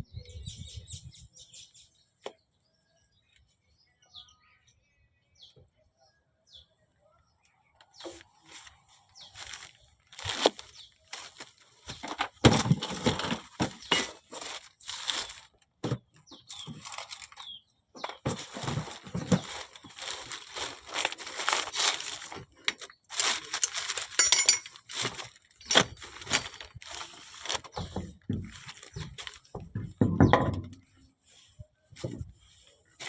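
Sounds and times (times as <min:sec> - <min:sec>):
hand tools clinking and scraping: 0:08.0 - 0:15.5, 0:16.5 - 0:33.0.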